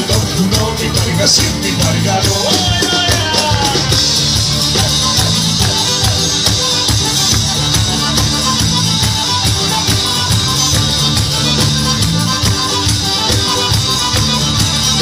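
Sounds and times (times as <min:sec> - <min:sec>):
fast folk dance music: 0:00.0 - 0:15.0.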